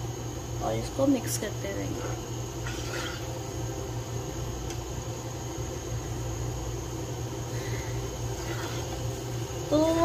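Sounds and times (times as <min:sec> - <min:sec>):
pan of water cooking: 0:00.9 - 0:06.2, 0:07.6 - 0:10.0.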